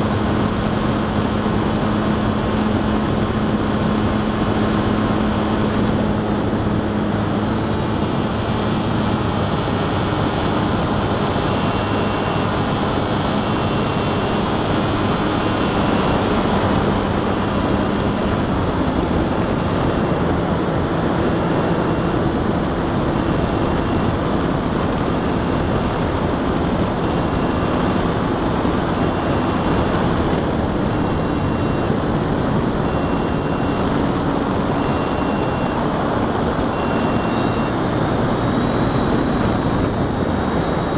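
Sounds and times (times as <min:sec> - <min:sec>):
model aircraft motor and propeller: 0:00.0 - 0:37.4
short high beep: 0:11.5 - 0:12.5, 0:13.4 - 0:14.5, 0:15.4 - 0:16.4, 0:17.2 - 0:20.3, 0:21.2 - 0:22.2, 0:23.1 - 0:24.2, 0:24.9 - 0:26.4, 0:27.0 - 0:30.0, 0:30.9 - 0:31.9, 0:32.8 - 0:33.9, 0:34.8 - 0:35.8, 0:36.7 - 0:37.8.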